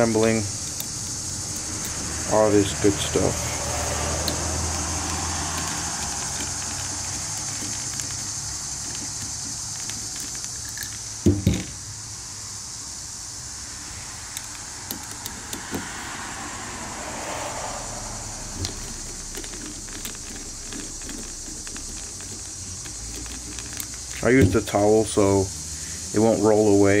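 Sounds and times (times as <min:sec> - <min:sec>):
steady hiss: 0:00.0 - 0:27.0
metal tools handled: 0:04.7 - 0:11.1.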